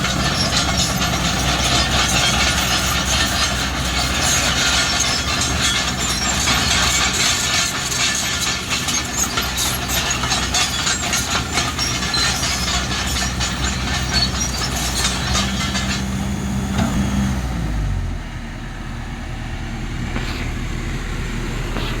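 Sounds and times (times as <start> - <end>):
machine rattling: 0.0 - 16.2
excavator diesel engine: 0.0 - 22.0.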